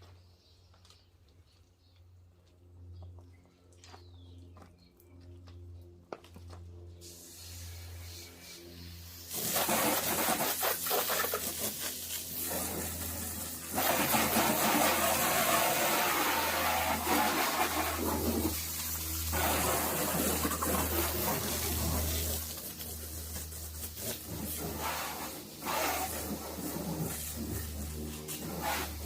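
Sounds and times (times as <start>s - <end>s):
steady low hum: 0.0s - 9.3s, 14.4s - 29.0s
water spraying hard: 9.0s - 29.0s.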